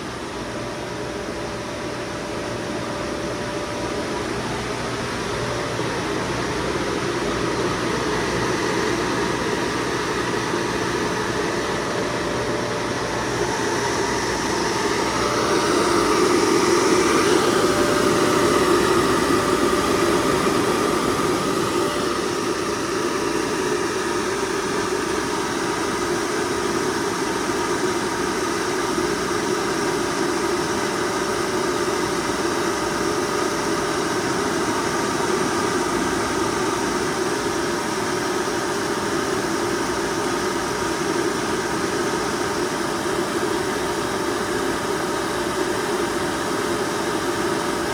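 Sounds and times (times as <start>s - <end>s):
air conditioner humming: 0.0s - 30.8s.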